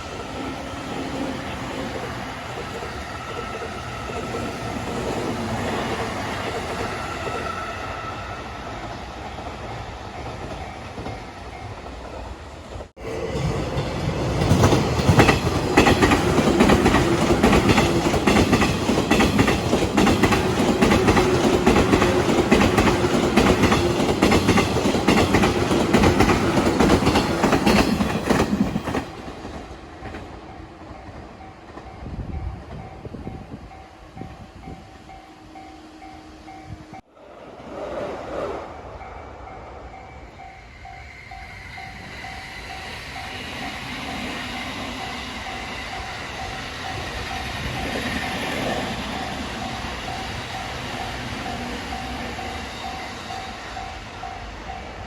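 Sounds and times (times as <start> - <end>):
train rumble: 0.0 - 55.0
train wheels clattering: 13.3 - 32.0.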